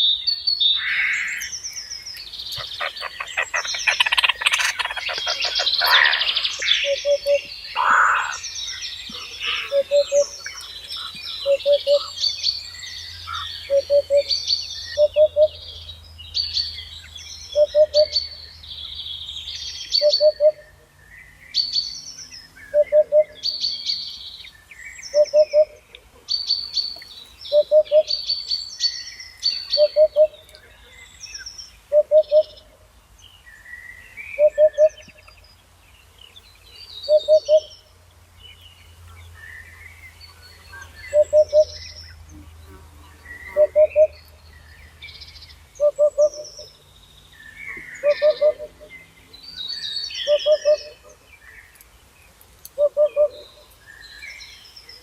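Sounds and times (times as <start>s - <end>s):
birds chirping and warbling: 0.0s - 55.0s
low-pitched pulsing bird call: 2.5s - 15.9s, 40.3s - 46.8s, 47.5s - 49.0s.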